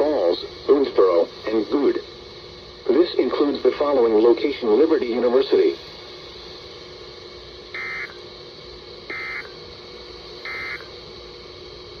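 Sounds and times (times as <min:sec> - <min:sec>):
radio receiver hiss: 0:00.0 - 0:12.0
digital data tone bursts: 0:07.8 - 0:08.2, 0:09.1 - 0:09.5, 0:10.4 - 0:10.9.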